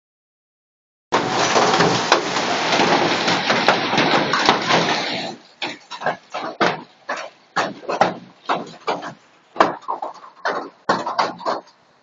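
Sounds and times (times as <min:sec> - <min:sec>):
hail and heavy rain pelting: 0:01.2 - 0:09.1
hailstones cracking on hard surfaces: 0:01.2 - 0:11.5.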